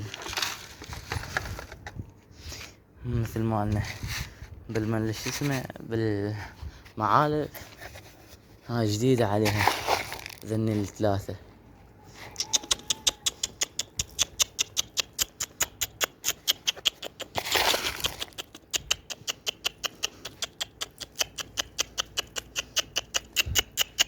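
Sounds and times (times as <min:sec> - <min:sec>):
pigeons pecking grain: 0:12.2 - 0:24.0.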